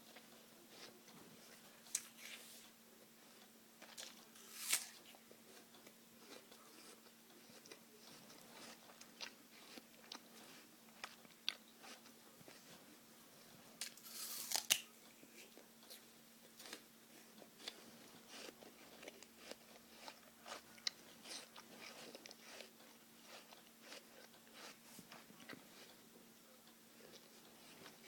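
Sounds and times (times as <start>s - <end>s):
person chewing apple: 0.0s - 12.8s, 13.8s - 28.0s.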